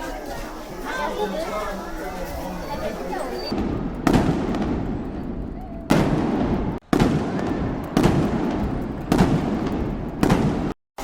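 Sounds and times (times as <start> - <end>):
fireworks bangs: 3.4 - 10.8.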